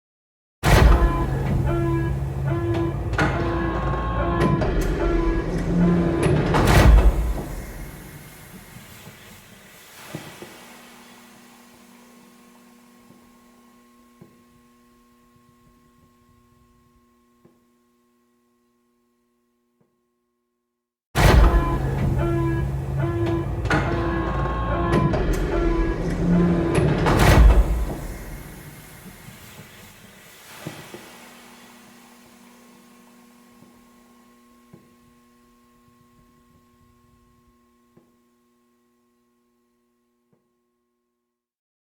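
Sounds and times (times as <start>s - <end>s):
hiss: 6.6s - 13.4s, 27.1s - 34.0s
low electrical hum: 10.6s - 19.6s, 31.1s - 40.4s.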